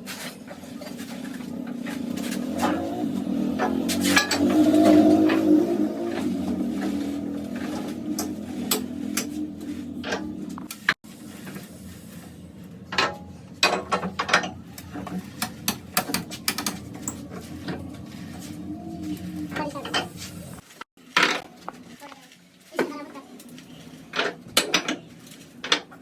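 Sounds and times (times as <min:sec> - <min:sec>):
tools clicking and knocking: 0:12.9 - 0:17.8.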